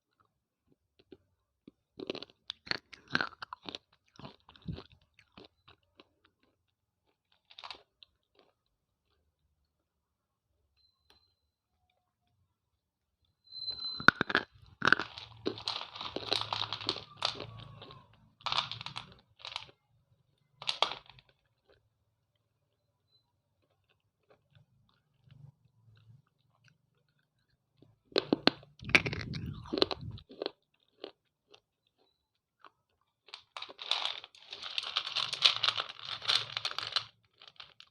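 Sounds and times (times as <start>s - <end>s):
slate pencils crunching when chewed: 1.8s - 9.2s, 14.1s - 19.8s, 20.4s - 21.9s, 23.6s - 37.9s
slate pencil being chewed: 28.8s - 37.9s.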